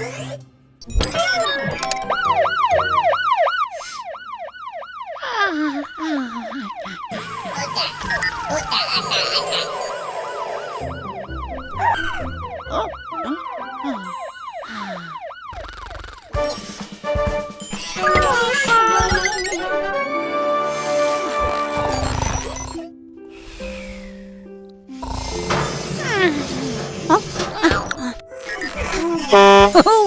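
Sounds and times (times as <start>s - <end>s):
cartoon music: 0.8s - 4.2s, 5.2s - 22.9s, 25.3s - 30.0s
siren yelping: 0.8s - 22.9s, 27.1s - 30.0s
falling slide sound effects: 7.2s - 15.1s.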